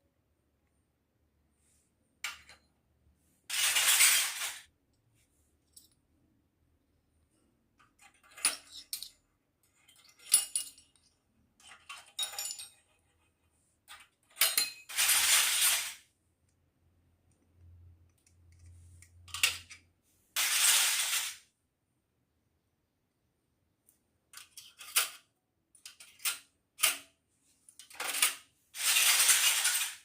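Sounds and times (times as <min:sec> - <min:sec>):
rustling or scraping: 0:03.2 - 0:05.5
toy pieces clinking and clicking: 0:03.5 - 0:04.7, 0:13.9 - 0:16.1, 0:20.4 - 0:21.5, 0:27.8 - 0:30.0.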